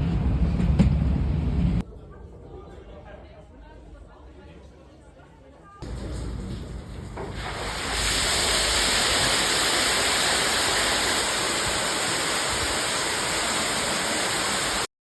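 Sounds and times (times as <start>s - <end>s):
water rushing: 5.8s - 14.9s.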